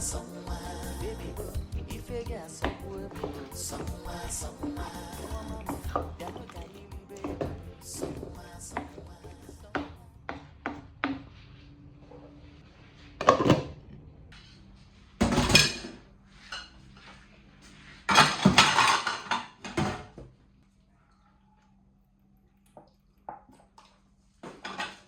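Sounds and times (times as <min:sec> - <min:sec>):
background music: 0:00.0 - 0:10.2
pots and dishes clattering: 0:02.6 - 0:09.0, 0:15.2 - 0:16.8, 0:18.1 - 0:20.2, 0:24.5 - 0:25.0
kitchenware clinking: 0:02.6 - 0:09.1, 0:15.2 - 0:16.8, 0:18.1 - 0:20.2, 0:24.5 - 0:25.0.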